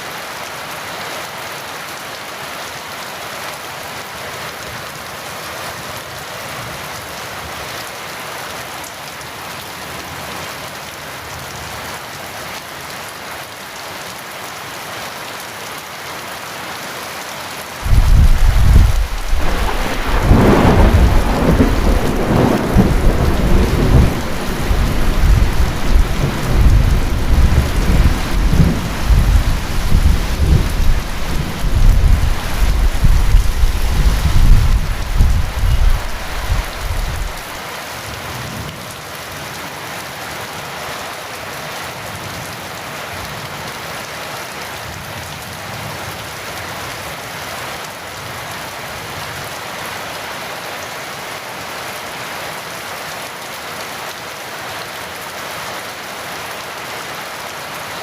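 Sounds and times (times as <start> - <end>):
heavy rain: 0.0 - 58.0
rolling thunder: 17.8 - 37.5.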